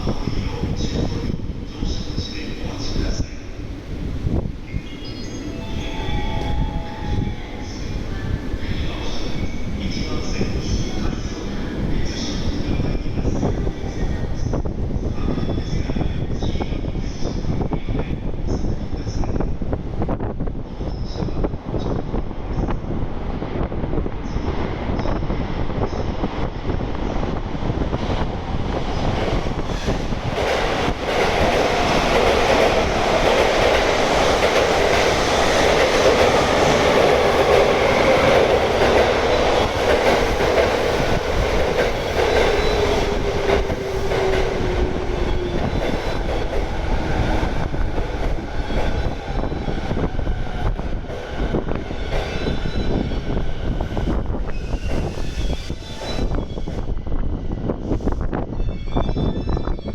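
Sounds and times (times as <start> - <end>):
train wheels rumbling on rail: 0.0 - 59.9.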